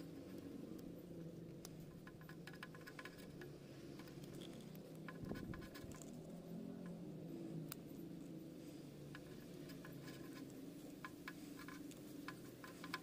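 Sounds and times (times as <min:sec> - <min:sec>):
steady low hum: 0:00.0 - 0:13.0
plastic parts clicking and tapping: 0:01.6 - 0:06.2, 0:09.1 - 0:13.0.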